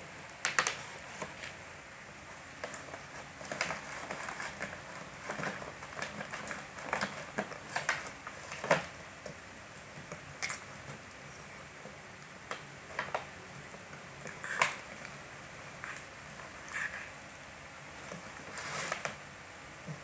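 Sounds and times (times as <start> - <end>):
dog chewing plastic bottle: 12.4 - 17.2.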